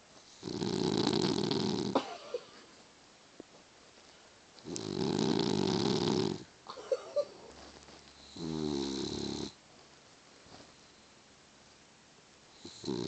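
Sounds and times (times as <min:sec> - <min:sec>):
dog snoring loudly: 0:00.3 - 0:02.0, 0:04.6 - 0:06.5, 0:08.2 - 0:09.6, 0:12.6 - 0:13.0.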